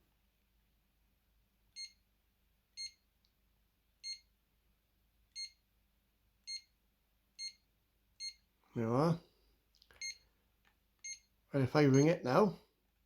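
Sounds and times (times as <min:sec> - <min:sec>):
mobile phone key beeps: 0:01.8 - 0:02.0, 0:02.8 - 0:03.0, 0:04.0 - 0:04.3, 0:05.4 - 0:05.6, 0:06.5 - 0:06.7, 0:07.4 - 0:07.6, 0:08.2 - 0:08.4, 0:10.0 - 0:10.2, 0:11.0 - 0:11.3, 0:11.9 - 0:12.2.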